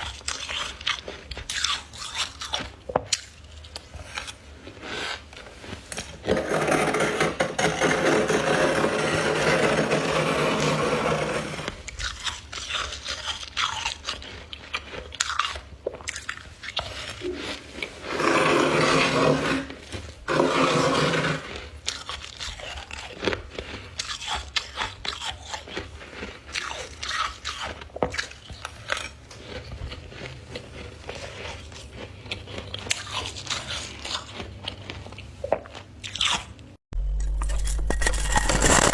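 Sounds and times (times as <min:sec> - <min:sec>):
chewing ice crunches: 0:00.0 - 0:06.3, 0:11.8 - 0:18.1, 0:21.4 - 0:38.9.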